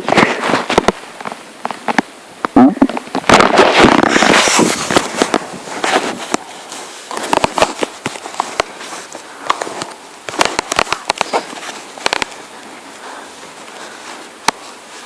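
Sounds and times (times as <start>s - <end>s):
crackling and clicking: 0.0s - 15.0s.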